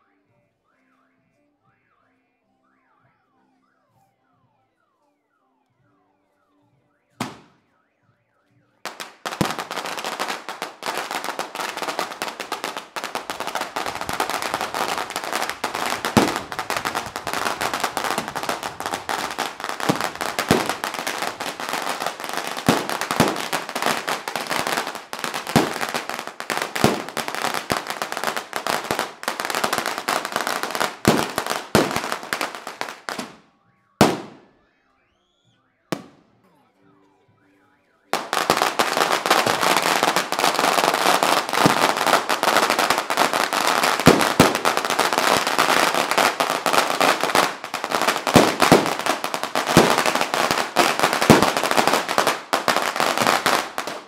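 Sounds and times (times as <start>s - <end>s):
firecrackers crackling: 7.1s - 7.7s, 8.7s - 34.6s, 35.2s - 36.7s, 38.1s - 54.0s
firecracker bang: 7.2s - 7.6s, 8.9s - 34.5s, 38.1s - 54.0s.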